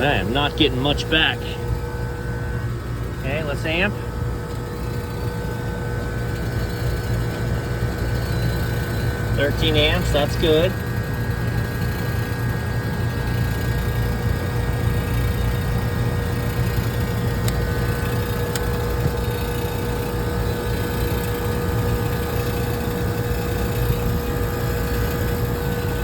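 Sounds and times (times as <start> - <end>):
constant mid-pitched tone: 0.0 - 26.0
rooftop unit humming: 0.0 - 26.0.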